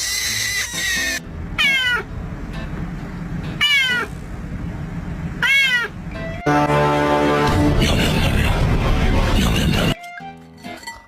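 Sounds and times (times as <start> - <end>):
cat meowing: 0.1 - 2.1, 3.6 - 4.1, 5.4 - 5.9.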